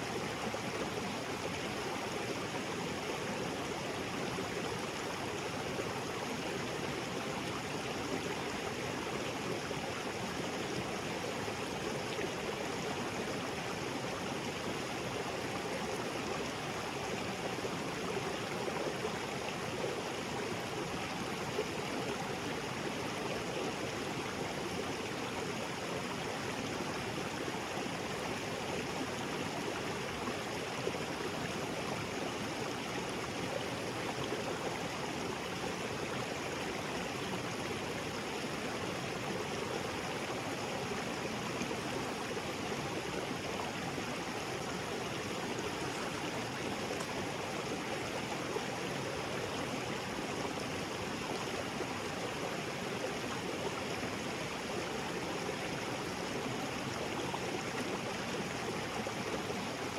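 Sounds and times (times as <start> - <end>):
small waterfall splashing: 10.4 - 59.9.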